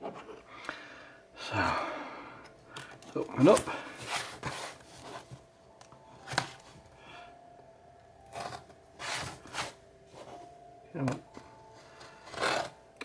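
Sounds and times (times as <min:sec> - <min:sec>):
packaging scraping and tearing: 0:03.4 - 0:05.4, 0:08.3 - 0:09.8, 0:12.1 - 0:12.8.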